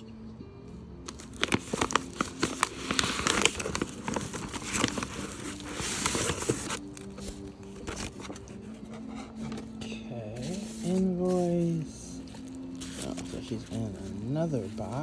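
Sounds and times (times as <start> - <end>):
packaging crinkling: 1.0 - 8.7, 12.2 - 15.0.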